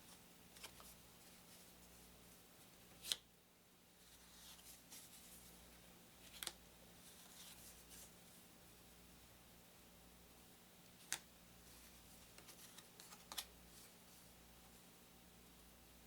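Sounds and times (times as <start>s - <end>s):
paper cards rustling: 0.5s - 1.7s, 6.2s - 8.1s, 11.0s - 14.0s
cards snapping: 12.4s - 13.5s.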